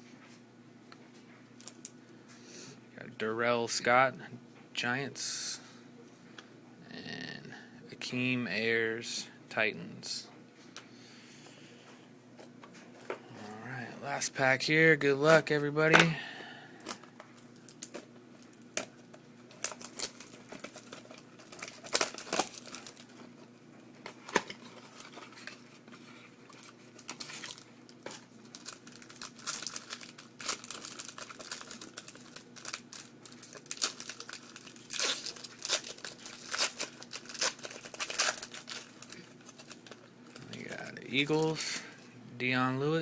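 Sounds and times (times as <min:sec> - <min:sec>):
wrapper tearing and crinkling: 0:17.6 - 0:23.2, 0:26.5 - 0:41.9.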